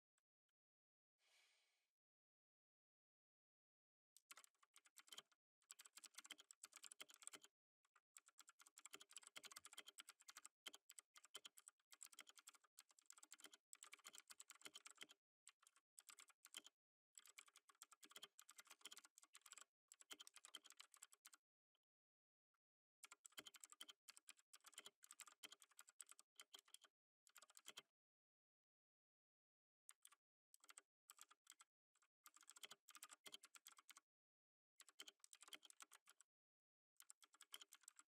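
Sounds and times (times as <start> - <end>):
computer keyboard typing: 4.3 - 7.5, 8.2 - 21.4, 23.0 - 27.8, 32.3 - 34.0, 34.8 - 36.2, 37.0 - 38.0.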